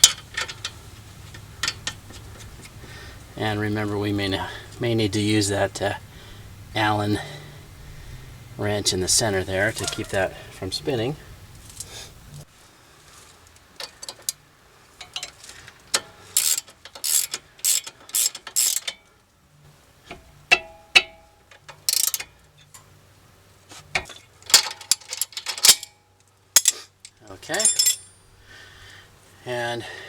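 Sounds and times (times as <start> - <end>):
hand ratchet clicking: 15.0 - 19.0, 20.1 - 22.3
metallic clink: 20.1 - 22.9, 24.0 - 28.4.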